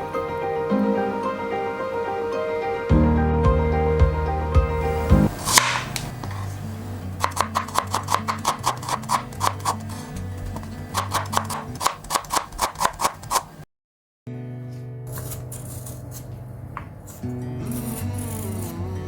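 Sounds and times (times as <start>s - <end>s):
background music with bass line: 2.9s - 5.4s.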